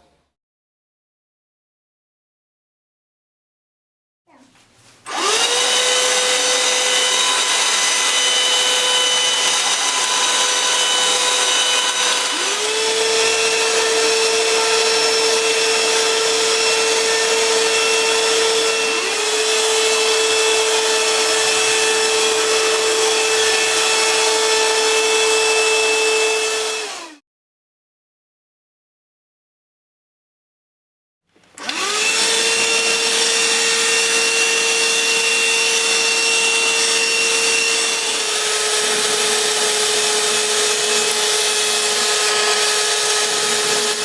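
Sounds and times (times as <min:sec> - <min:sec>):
vacuum cleaner motor whine: 0:05.1 - 0:27.2, 0:31.6 - 0:44.0.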